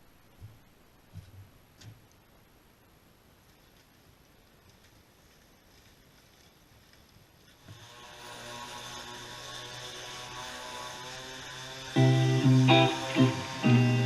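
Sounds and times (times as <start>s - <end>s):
pressure washer motor running: 7.7s - 14.0s
guitar music: 12.0s - 14.0s.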